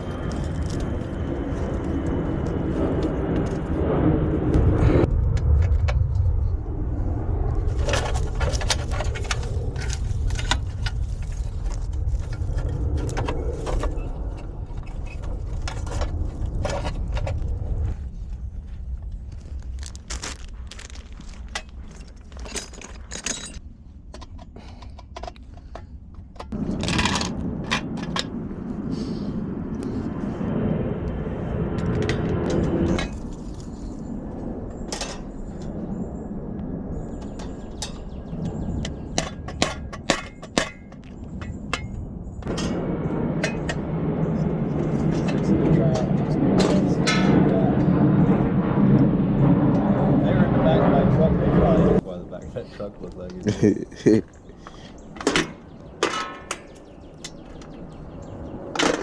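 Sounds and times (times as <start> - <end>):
steady low rumble: 0.0 - 59.0
metal tools clinking and rattling: 20.8 - 28.2.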